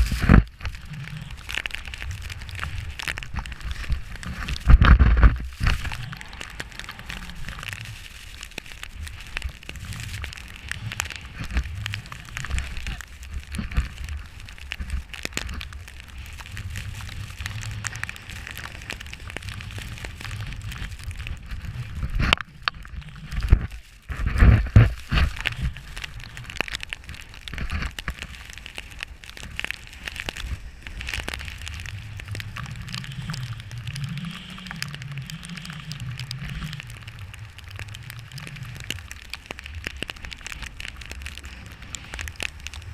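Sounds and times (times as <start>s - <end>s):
snowboard scraping over snow: 0.0s - 1.4s
crackly hiss: 0.0s - 42.9s
wind rumbling on microphone: 0.0s - 42.9s.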